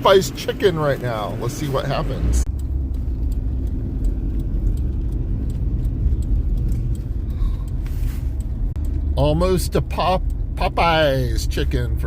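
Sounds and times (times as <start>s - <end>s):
road rumble inside car: 0.0s - 12.0s
faint light ticks: 2.4s - 12.0s.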